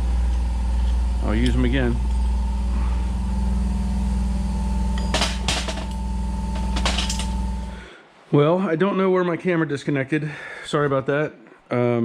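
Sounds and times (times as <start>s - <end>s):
machine humming: 0.0s - 8.0s
sharp metallic knocks: 4.9s - 7.7s.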